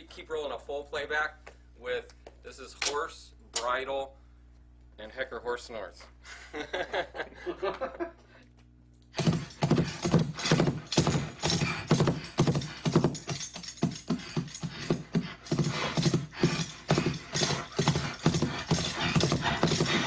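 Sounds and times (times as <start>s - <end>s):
bridle jingling: 9.2s - 20.0s
hooves clip-clopping: 9.2s - 20.0s
horse snorts: 9.2s - 20.0s.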